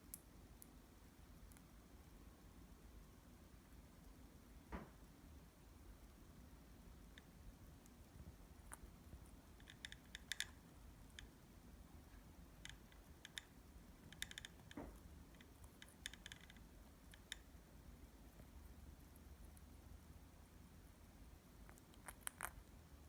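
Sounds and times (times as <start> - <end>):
beak nibbling clicks: 7.1 - 11.3, 12.6 - 17.5, 21.6 - 22.7.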